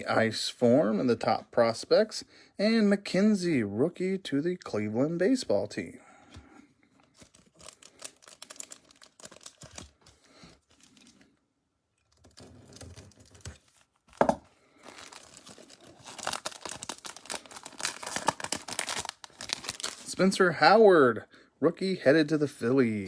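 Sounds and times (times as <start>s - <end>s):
foil wrapper tearing and crinkling: 7.1s - 11.2s, 12.3s - 20.3s.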